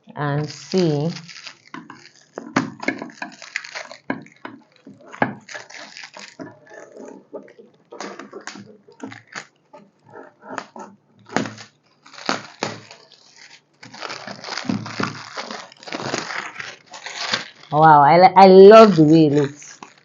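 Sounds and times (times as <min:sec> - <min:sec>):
packaging rustling and crinkling: 0:00.0 - 0:17.8, 0:18.4 - 0:20.0.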